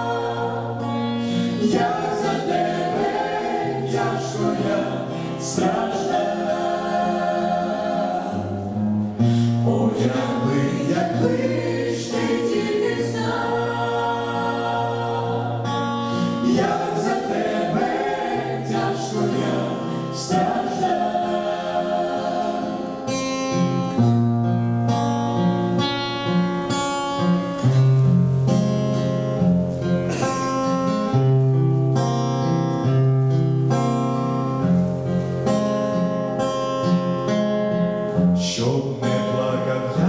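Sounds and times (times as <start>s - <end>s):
choir singing: 0.0s - 24.1s, 38.5s - 40.0s
strummed acoustic guitar: 0.0s - 40.0s.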